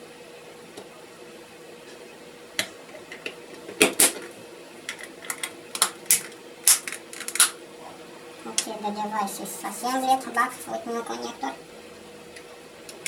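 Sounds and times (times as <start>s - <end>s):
plastic casing clicking together: 4.9s - 7.6s.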